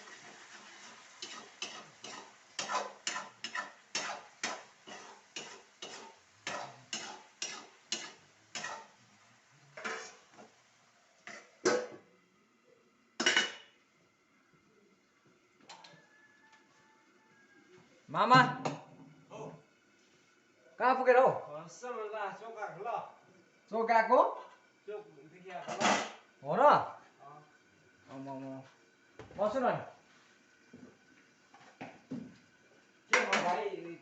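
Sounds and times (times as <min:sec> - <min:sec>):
metal spoon stirring in pot: 0:00.0 - 0:09.0, 0:09.7 - 0:10.5
spoon clanking against pot: 0:01.2 - 0:08.9.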